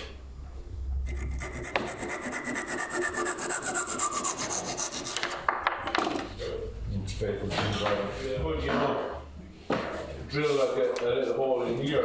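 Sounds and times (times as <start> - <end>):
hand tool rasping wood: 1.1 - 5.5.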